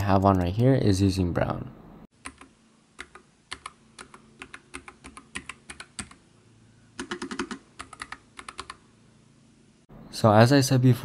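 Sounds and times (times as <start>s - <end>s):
mechanical keyboard typing: 2.2s - 6.2s, 7.0s - 8.8s.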